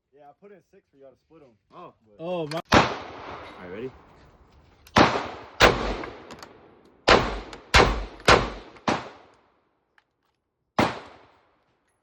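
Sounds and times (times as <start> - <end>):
gunshots echoing: 2.7 - 4.1, 4.9 - 9.3, 10.8 - 11.4.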